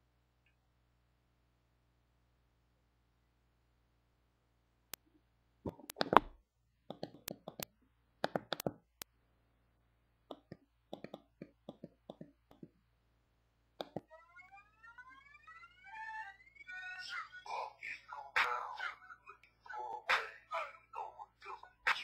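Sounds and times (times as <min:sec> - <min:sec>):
clicks and light taps: 0:05.7 - 0:09.1, 0:10.3 - 0:12.8, 0:13.8 - 0:14.1
phone ringtone: 0:14.0 - 0:19.4.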